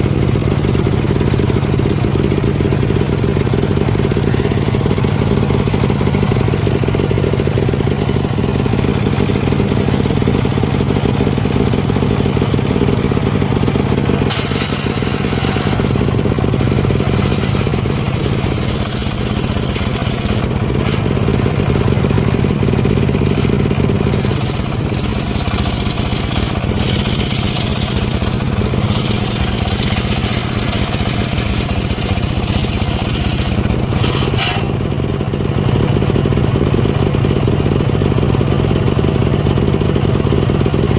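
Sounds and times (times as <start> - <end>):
engine-driven saw running: 0.0 - 40.9
saw blade rasping through timber: 14.0 - 21.4, 23.0 - 34.9.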